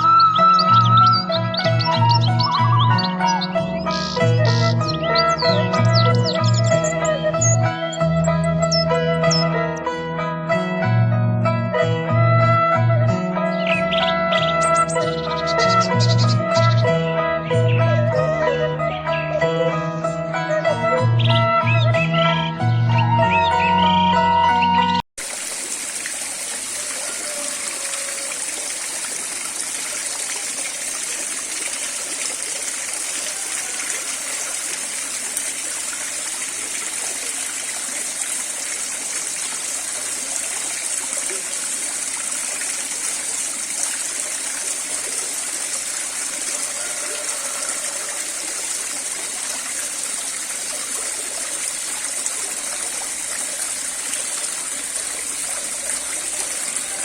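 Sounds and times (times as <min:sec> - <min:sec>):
waterfall splashing: 0:25.2 - 0:57.0.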